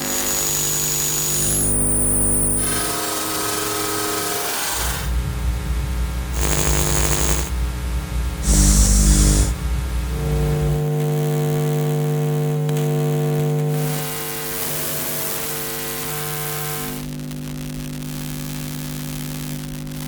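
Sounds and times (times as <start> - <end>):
pitched electrical hum: 0.0 - 20.0
static hiss bursts: 4.7 - 14.1
low rumbling electrical hum: 4.8 - 14.7.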